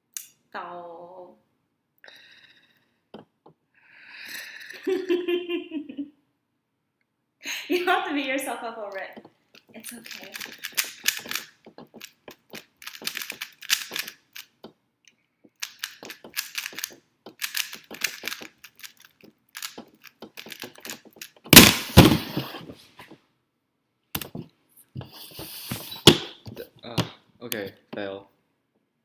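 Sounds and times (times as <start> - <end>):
puzzle cube layers clicking: 9.8 - 14.7, 15.5 - 22.4
loud plastic clatter: 19.6 - 22.6.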